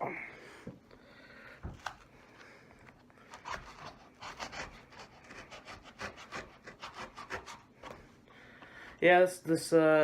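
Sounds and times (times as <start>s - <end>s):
knife scraping packaging: 3.3s - 8.0s.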